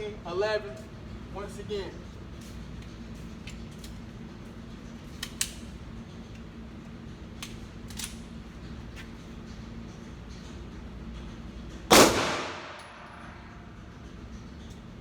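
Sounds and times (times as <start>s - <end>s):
steady fan-like hum: 0.0s - 15.0s
pistol mechanical clicks: 5.1s - 5.8s, 7.4s - 8.4s, 11.9s - 13.4s.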